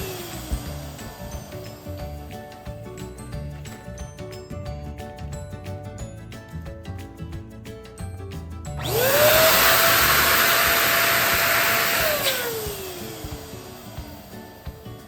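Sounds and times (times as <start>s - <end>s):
balloon inflator motor whine: 0.0s - 2.1s, 8.8s - 15.0s.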